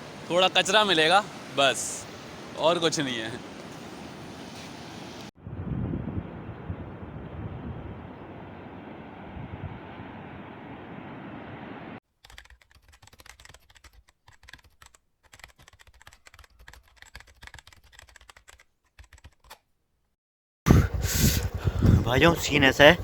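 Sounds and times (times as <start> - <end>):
wind rushing over microphone: 5.4 - 12.0, 20.7 - 23.0.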